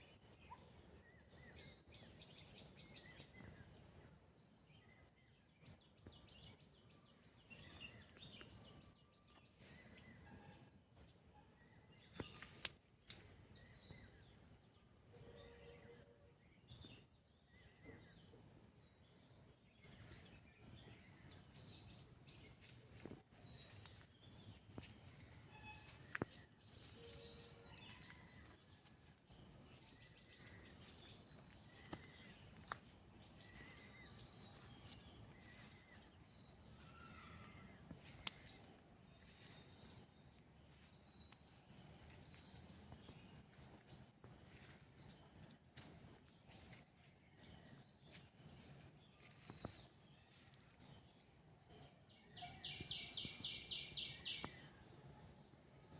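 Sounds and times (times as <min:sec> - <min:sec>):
insects chirping: 0:17.5 - 0:54.7.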